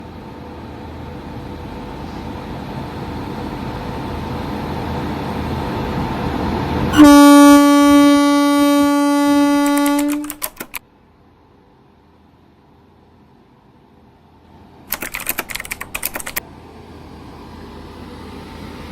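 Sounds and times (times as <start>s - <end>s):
moving train rumble: 0.0s - 10.8s
locomotive horn blasts: 6.9s - 10.4s.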